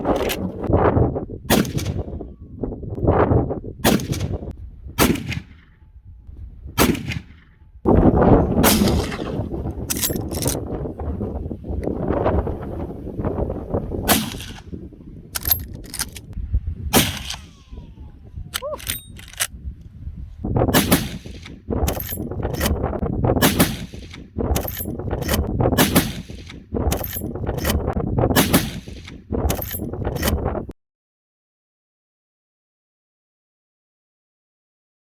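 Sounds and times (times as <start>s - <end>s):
rifle shots: 1.5s - 2.1s, 3.8s - 5.8s, 6.8s - 7.6s, 8.5s - 10.6s, 14.1s - 14.8s, 16.9s - 17.8s, 20.7s - 22.8s, 23.4s - 30.4s
rifle lever metallic clacks: 9.9s - 10.6s, 15.4s - 16.3s, 18.6s - 19.5s, 21.4s - 22.8s, 24.1s - 25.5s, 26.4s - 27.9s, 29.0s - 30.4s.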